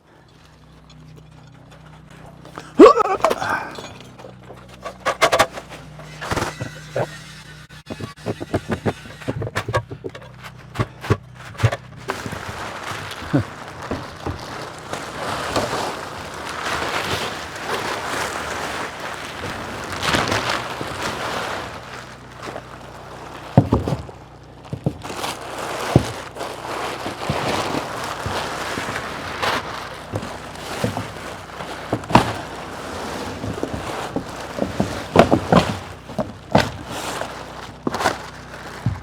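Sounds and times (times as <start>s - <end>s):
plastic tarp rustling: 0.0s - 7.1s, 7.8s - 39.0s
knocks and thumps: 2.8s - 15.7s, 27.1s - 39.0s.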